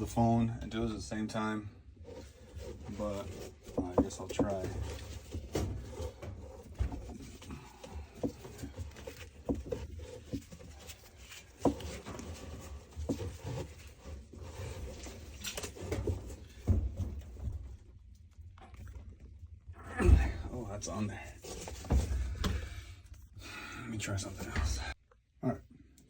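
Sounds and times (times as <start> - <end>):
knocks and scrapes in washer tub: 2.0 - 17.9, 19.9 - 22.9, 24.1 - 25.0.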